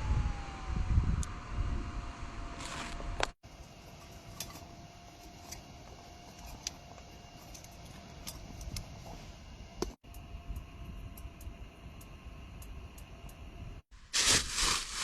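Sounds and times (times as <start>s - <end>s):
fire ticks and crackles: 6.3s - 13.8s.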